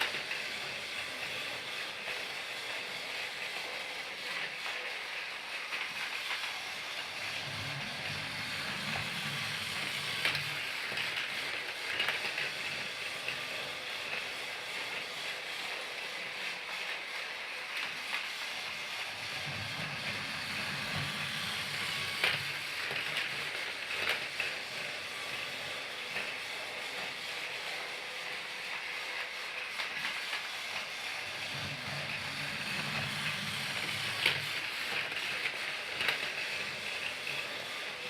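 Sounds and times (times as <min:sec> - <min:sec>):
toy train whirring: 0:00.0 - 0:38.0.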